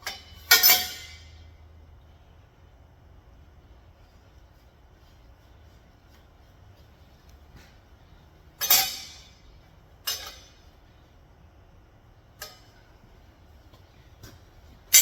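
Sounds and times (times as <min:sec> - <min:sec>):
steel pieces clanking: 0:00.0 - 0:01.4, 0:08.6 - 0:10.7.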